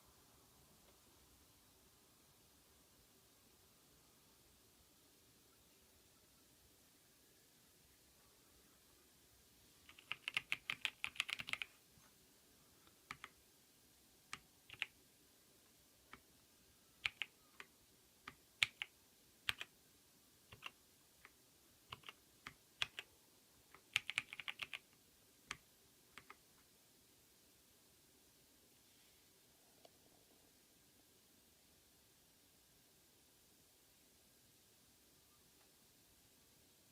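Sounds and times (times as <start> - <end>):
mechanical keyboard typing: 9.9 - 11.7, 13.0 - 13.4, 14.3 - 15.0, 17.0 - 19.7, 20.5 - 23.1, 23.8 - 24.9.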